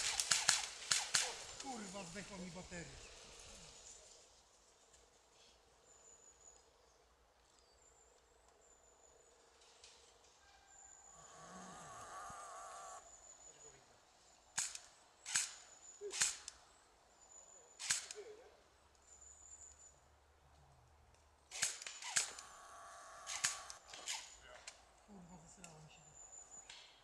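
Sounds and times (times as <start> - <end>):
airsoft gun shots: 0.0 - 1.6, 21.5 - 24.2.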